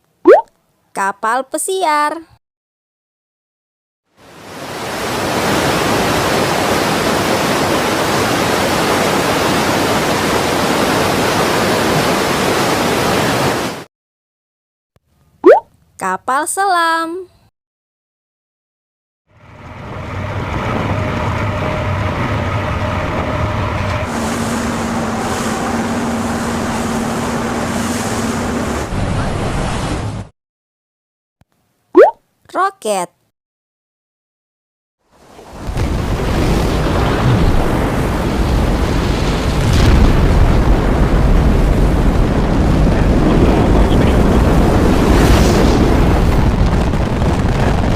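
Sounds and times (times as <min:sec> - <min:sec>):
water rushing: 0:04.2 - 0:13.9, 0:20.3 - 0:30.2
submarine engine hum: 0:19.3 - 0:30.3
rocket engines rumbling: 0:40.6 - 0:47.9.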